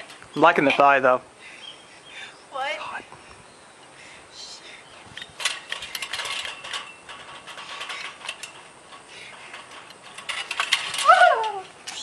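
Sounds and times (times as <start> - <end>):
irregular clicks and rattles: 5.1 - 12.0.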